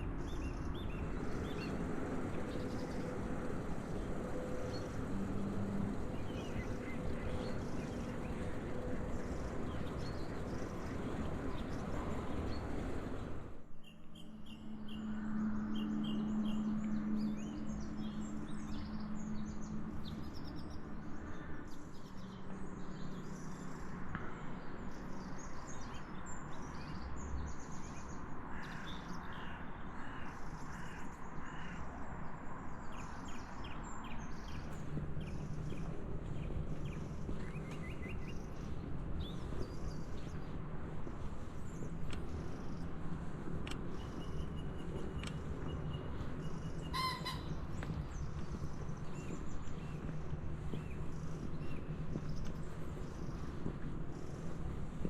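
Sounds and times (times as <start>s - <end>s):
birds chirping and calling: 44.0s - 48.5s.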